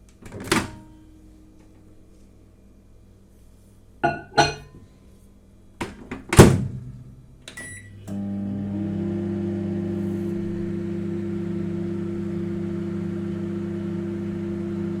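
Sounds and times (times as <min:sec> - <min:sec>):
microwave door shutting: 0:00.2 - 0:00.9
microwave oven humming: 0:07.4 - 0:15.0
keypad beeps: 0:07.6 - 0:07.9.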